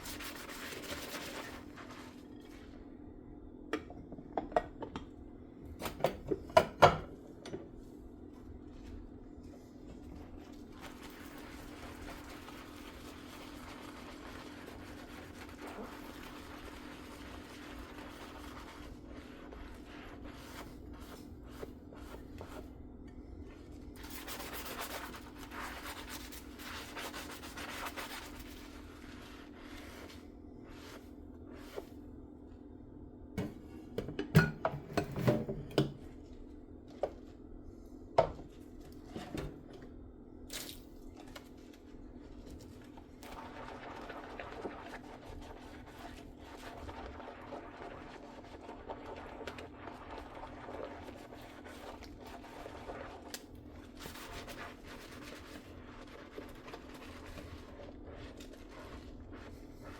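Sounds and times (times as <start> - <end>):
sponge scrubbing a dish: 0.0 - 3.0, 8.7 - 32.1, 41.7 - 59.9.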